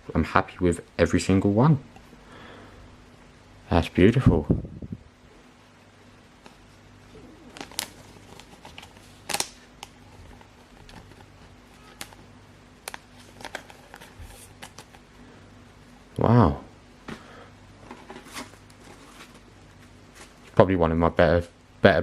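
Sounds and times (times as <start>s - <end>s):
cards clicking and rustling: 7.5s - 15.0s.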